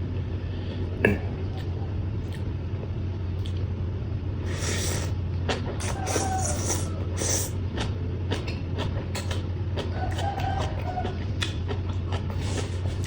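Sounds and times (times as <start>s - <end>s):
steady low hum: 0.0s - 13.0s
chewing and crunching food: 4.5s - 13.0s.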